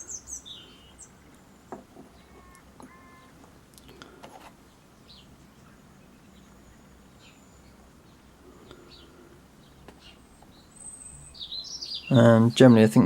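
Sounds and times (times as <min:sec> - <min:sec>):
faint bird chirps: 0:00.0 - 0:12.6.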